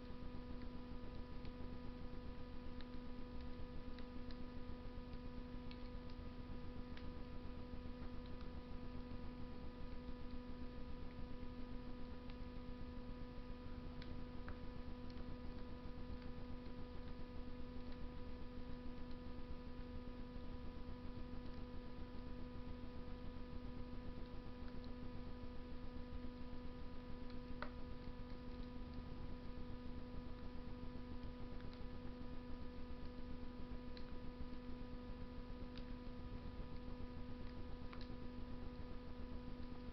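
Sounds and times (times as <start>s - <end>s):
steady hum: 0.0s - 39.9s
wood fire crackling and popping: 0.2s - 10.5s, 13.6s - 19.4s, 27.0s - 30.6s.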